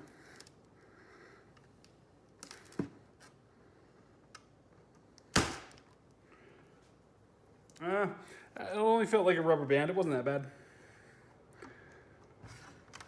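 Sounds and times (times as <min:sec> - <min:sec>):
sharp snap: 0:05.3 - 0:05.8.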